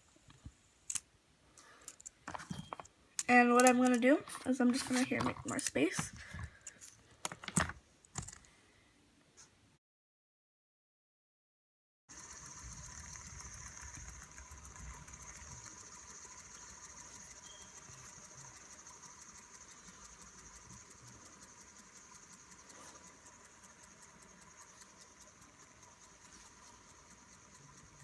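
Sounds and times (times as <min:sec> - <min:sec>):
fidget spinner whirring: 0:01.9 - 0:08.4, 0:12.1 - 0:28.0.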